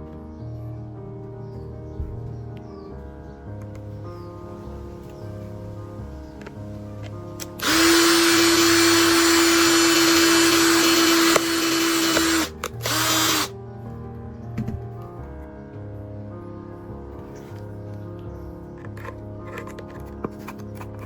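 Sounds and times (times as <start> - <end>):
background music: 0.0 - 21.0
electric power tool whining: 7.4 - 13.5.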